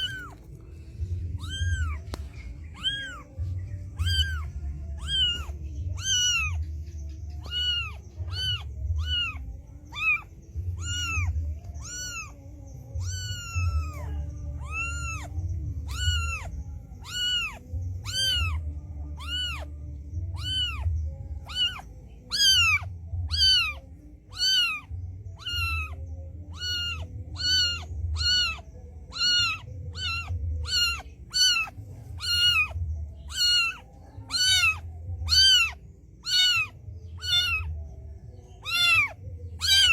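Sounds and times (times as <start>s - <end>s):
cat meowing: 0.0s - 0.4s, 1.2s - 6.7s, 7.4s - 19.7s, 20.3s - 37.8s, 38.6s - 39.9s
low rumble: 0.0s - 34.2s.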